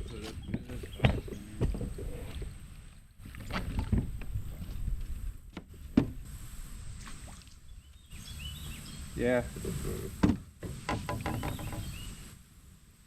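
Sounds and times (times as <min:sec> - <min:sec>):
bumps and rumbles on kayak: 0:00.0 - 0:07.3, 0:08.1 - 0:12.3
sharp knocks: 0:10.2 - 0:12.0.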